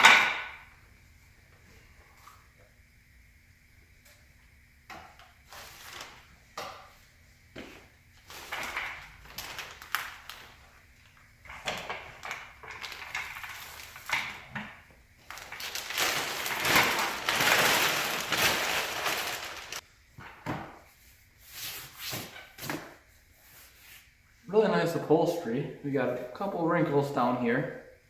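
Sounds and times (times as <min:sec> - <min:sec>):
loud rustling: 0:15.3 - 0:19.8.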